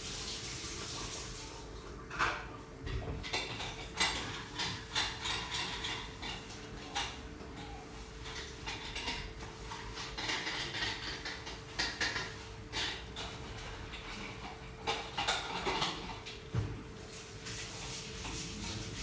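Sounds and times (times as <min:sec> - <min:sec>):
kitchen clicks and rattles: 0:02.1 - 0:16.5.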